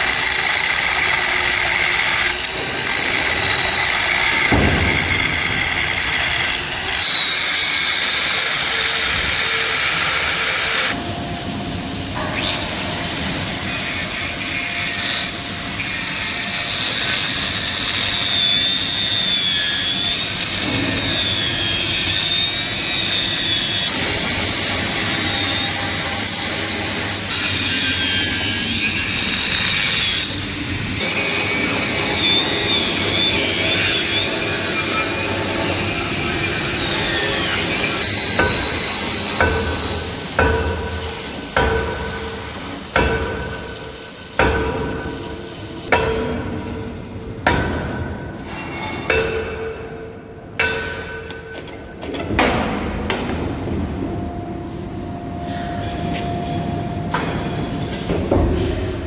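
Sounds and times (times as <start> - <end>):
power tool whining: 0.0 - 11.0.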